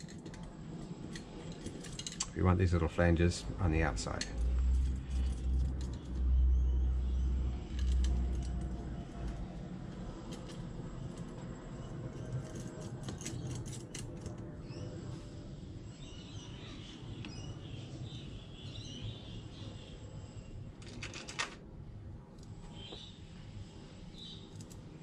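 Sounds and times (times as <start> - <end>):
small metal parts clicking: 0.0 - 2.3, 7.7 - 9.4, 10.2 - 14.4, 24.5 - 24.8
low background hum: 0.0 - 25.0.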